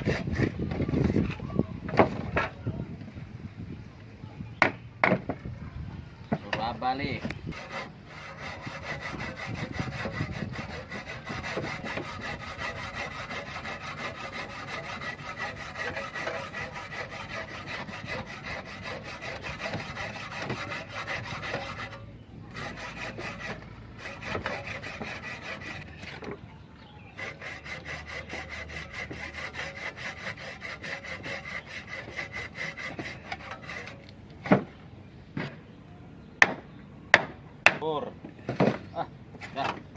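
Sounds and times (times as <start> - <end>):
saw rasping through brick: 0.0 - 1.4, 7.5 - 26.3, 27.1 - 34.1.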